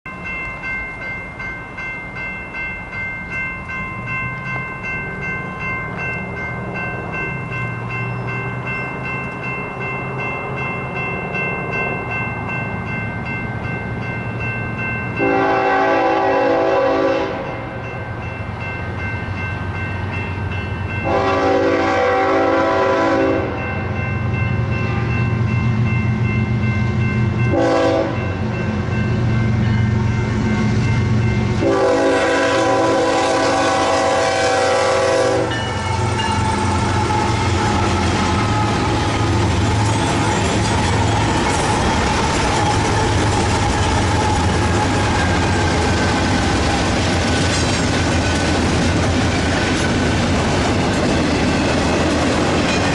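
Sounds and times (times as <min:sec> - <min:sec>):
crossing bell ringing: 0:00.0 - 0:52.9
train horn blasts: 0:15.2 - 0:17.8, 0:21.0 - 0:23.7, 0:24.8 - 0:25.2, 0:27.5 - 0:28.4, 0:31.6 - 0:39.3
locomotive engine rumble: 0:24.3 - 0:52.9.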